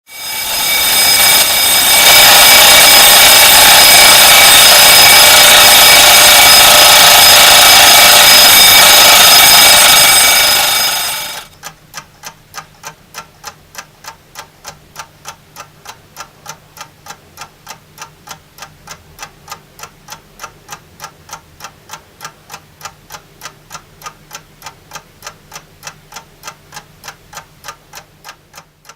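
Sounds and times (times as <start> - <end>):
alarm clock bell ringing: 0.1 - 11.5
clock ticking: 0.1 - 28.9.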